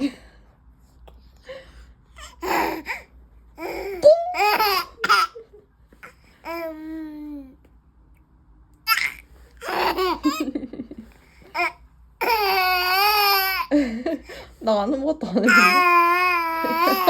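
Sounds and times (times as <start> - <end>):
baby laughing: 3.6 - 5.6, 8.9 - 10.8, 15.4 - 17.0.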